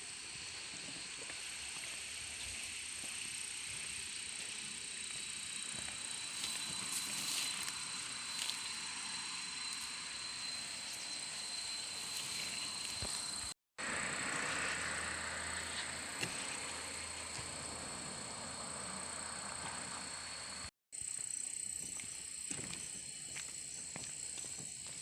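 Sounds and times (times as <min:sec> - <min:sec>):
insects chirring: 0:00.0 - 0:25.0
low hum: 0:03.6 - 0:20.7.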